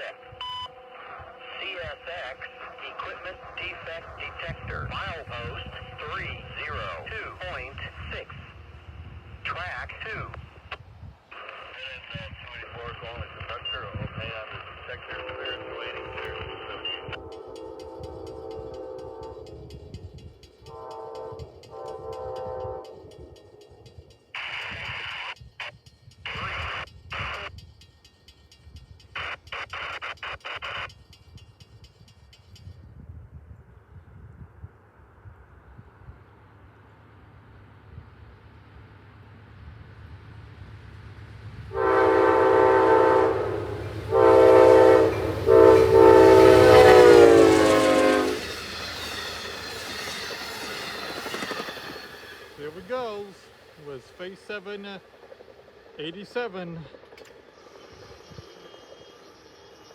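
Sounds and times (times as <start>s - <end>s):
passing train rumble: 0.0s - 59.9s
radio static bursts: 11.3s - 17.0s
locomotive air horn chord: 15.2s - 19.9s, 20.7s - 23.4s, 41.7s - 48.5s.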